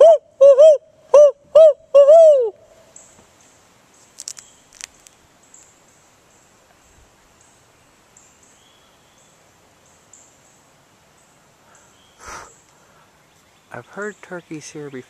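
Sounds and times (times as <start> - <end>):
soft rustle: 2.9 - 11.6
insects buzzing: 2.9 - 15.0.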